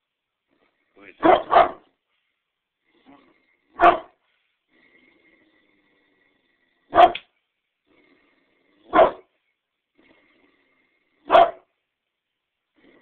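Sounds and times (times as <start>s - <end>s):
large dog barking: 1.2s - 1.9s, 3.7s - 4.2s, 6.9s - 7.3s, 8.8s - 9.3s, 11.2s - 11.7s.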